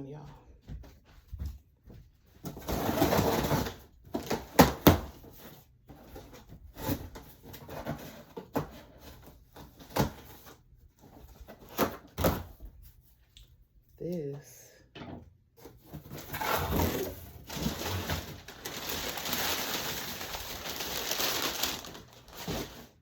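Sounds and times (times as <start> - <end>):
items knocking and thumping: 14.9 - 23.0
packaging rustling: 16.0 - 23.0.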